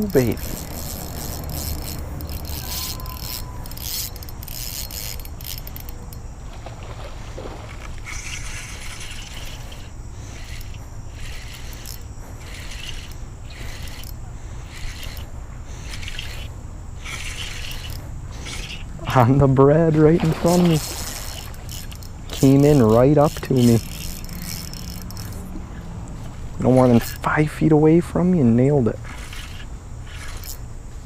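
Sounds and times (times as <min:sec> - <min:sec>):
fishing reel ratcheting: 0:00.0 - 0:06.4, 0:08.0 - 0:27.6, 0:28.4 - 0:30.6.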